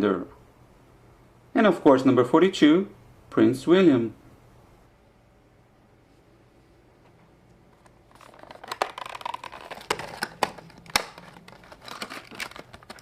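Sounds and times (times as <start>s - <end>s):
plastic packaging crinkling: 7.8s - 13.0s
sharp clicks and crackles: 7.8s - 13.0s.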